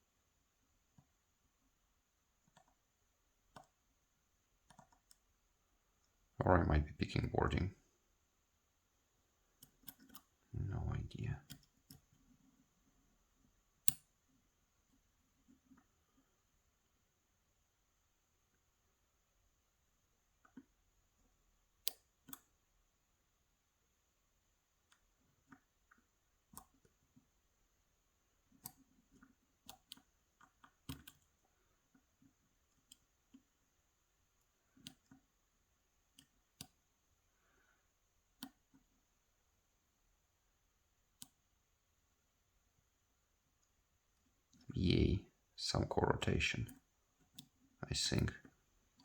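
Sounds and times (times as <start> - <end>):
lock pick clicks and taps: 28.6 - 31.3.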